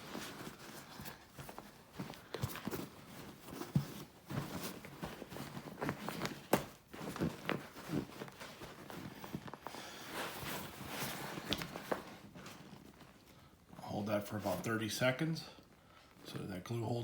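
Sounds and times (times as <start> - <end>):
rubber mask handled with taps and knocks: 0.0 - 13.8.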